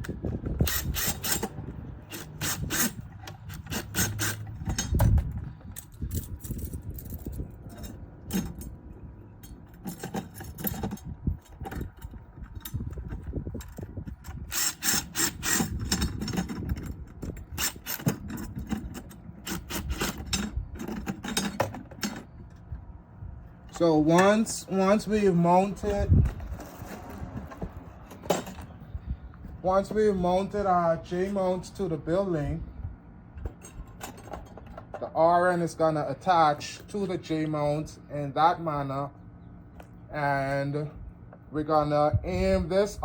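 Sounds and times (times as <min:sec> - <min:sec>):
hand ratchet clicking: 0:14.3 - 0:16.9.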